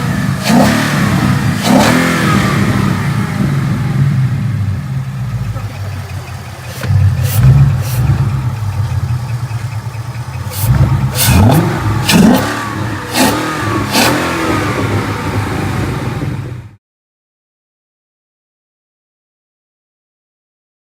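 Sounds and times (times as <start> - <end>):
car engine revving: 0.0 - 16.8.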